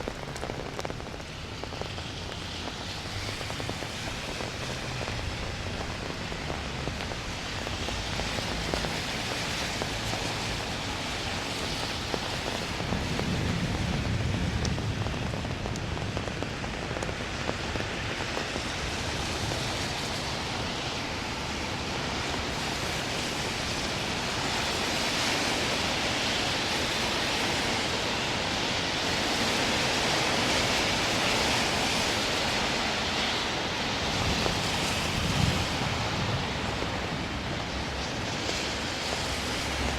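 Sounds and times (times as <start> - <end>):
rain splashing on street: 0.0 - 39.9
low rumble: 12.3 - 16.7.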